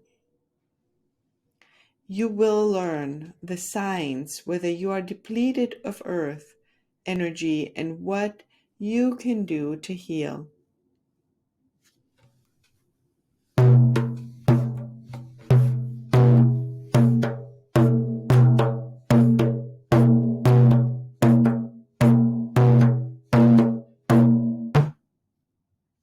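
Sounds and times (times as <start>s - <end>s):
low-pitched drum strokes: 13.6s - 24.9s.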